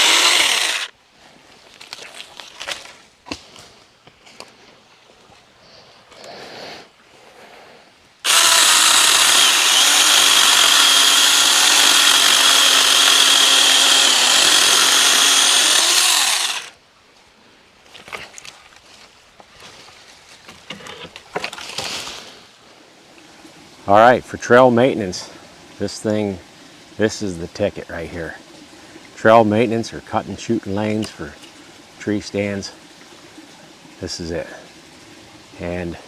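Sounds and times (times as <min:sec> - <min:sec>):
electric chainsaw running: 0:00.0 - 0:00.9, 0:08.3 - 0:16.8.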